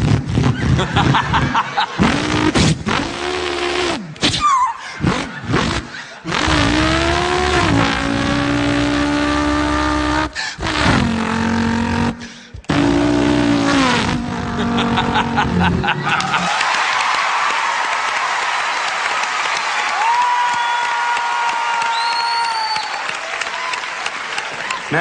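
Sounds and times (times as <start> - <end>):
man imitating car engine revving: 0.0 - 16.5.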